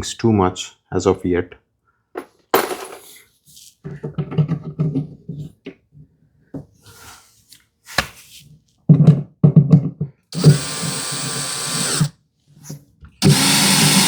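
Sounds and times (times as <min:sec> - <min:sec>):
drill driver pulsing bursts: 0:10.4 - 0:12.1, 0:13.2 - 0:14.0.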